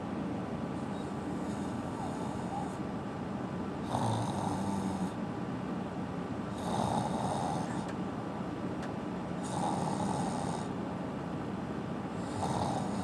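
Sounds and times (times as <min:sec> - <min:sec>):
person snoring: 0:09.4 - 0:10.7, 0:12.2 - 0:13.0.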